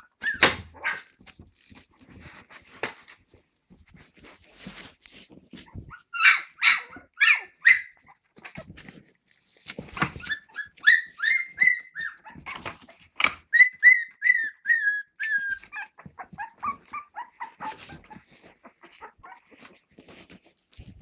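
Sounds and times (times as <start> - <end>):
puppies squealing and whimpering: 0.0 - 1.1, 5.5 - 8.8, 10.0 - 20.4
knocks and rustling: 9.7 - 10.4.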